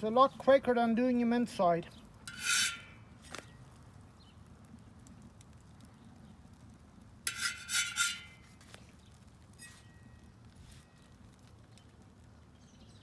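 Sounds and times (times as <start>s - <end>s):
metal scraping on steel disc: 2.3s - 3.4s, 7.3s - 8.8s, 9.6s - 9.9s.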